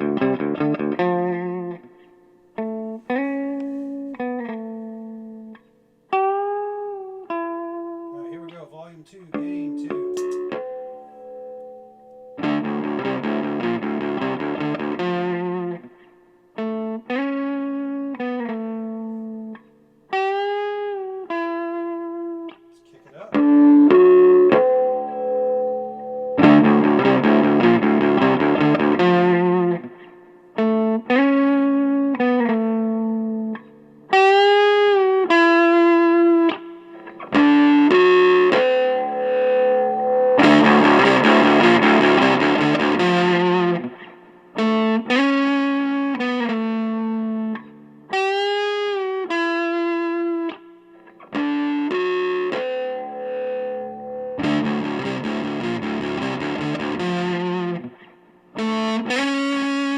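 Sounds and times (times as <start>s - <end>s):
distorted electric guitar: 9.3s - 16.0s, 23.1s - 59.9s.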